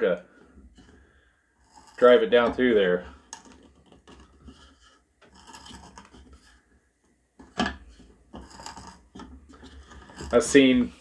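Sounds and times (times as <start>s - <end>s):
bit rasping into wood: 0.7s - 2.5s, 3.1s - 6.7s, 7.4s - 10.8s.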